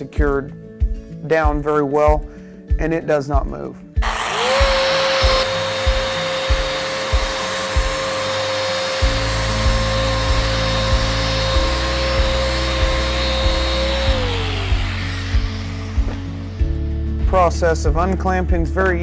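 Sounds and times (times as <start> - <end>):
background music with steady beat: 0.0 - 19.0
sander motor whine and hiss: 4.0 - 17.5.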